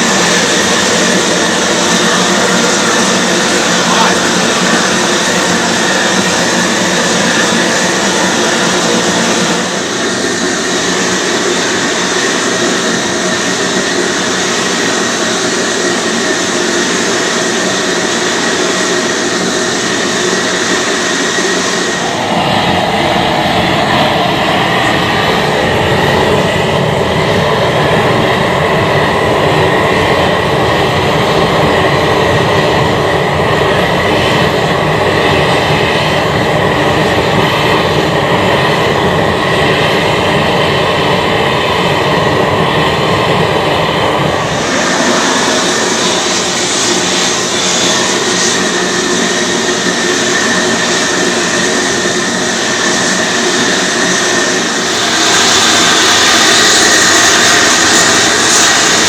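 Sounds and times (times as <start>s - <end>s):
gas torch flames rushing: 44.0s - 59.0s.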